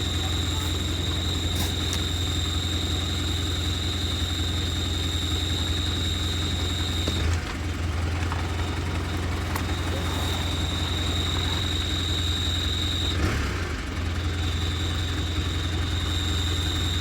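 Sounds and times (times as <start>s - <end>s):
high-pitched whistle: 0.0s - 7.2s
diesel engine idling: 0.0s - 17.0s.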